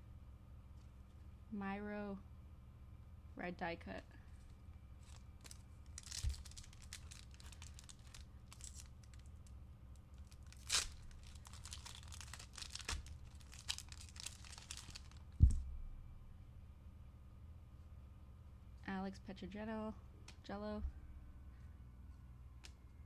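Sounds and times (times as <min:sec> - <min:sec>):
paper wrapper tearing and crinkling: 0:05.0 - 0:09.3, 0:10.2 - 0:15.4
short thump: 0:15.4 - 0:16.0.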